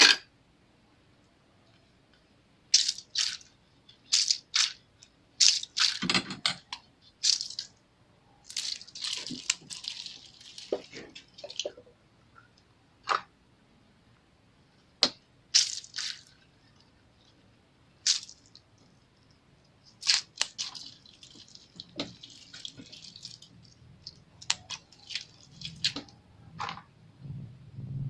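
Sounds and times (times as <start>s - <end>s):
slime squishing and popping: 19.9s - 26.2s.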